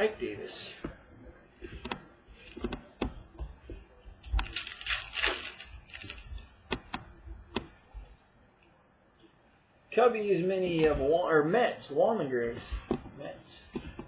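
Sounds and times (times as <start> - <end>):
wrapper crinkling rustle: 4.2 - 6.6.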